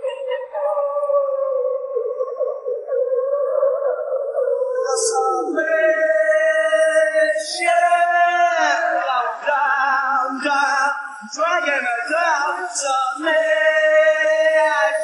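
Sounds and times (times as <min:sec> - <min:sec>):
man singing wordless notes: 0:04.8 - 0:15.0.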